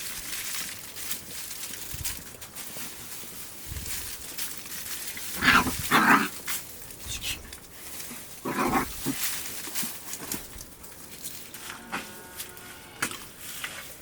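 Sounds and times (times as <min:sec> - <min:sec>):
loud animal calls: 0:05.4 - 0:06.3, 0:08.4 - 0:09.2.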